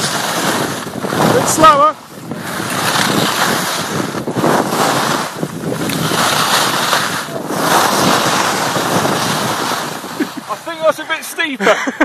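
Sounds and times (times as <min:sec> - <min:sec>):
hiss of sliding on snow: 0:00.0 - 0:11.6
wind rushing over microphone: 0:00.0 - 0:11.6.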